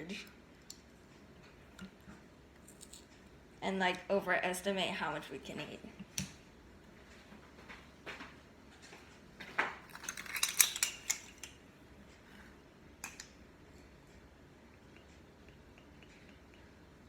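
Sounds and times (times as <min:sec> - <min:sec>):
kitchen utensils clinking: 0:09.9 - 0:11.6.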